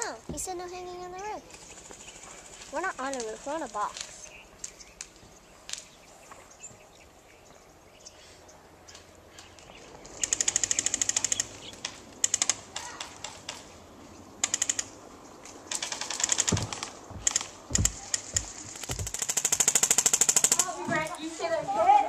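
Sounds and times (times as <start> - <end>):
airsoft guns firing automatic bursts: 10.2 - 13.6, 14.4 - 15.0, 15.7 - 20.8
dull low thumps: 16.4 - 19.2.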